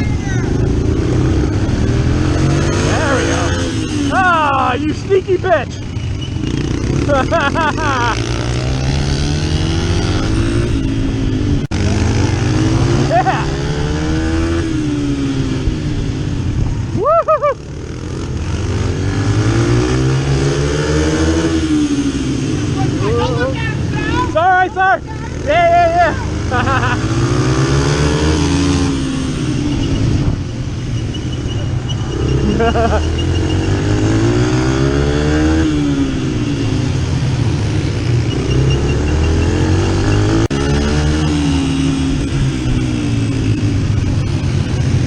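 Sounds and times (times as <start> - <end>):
dirt bike engine: 0.0 - 45.0
rider whooping: 12.9 - 13.7, 16.9 - 18.0, 22.9 - 27.0.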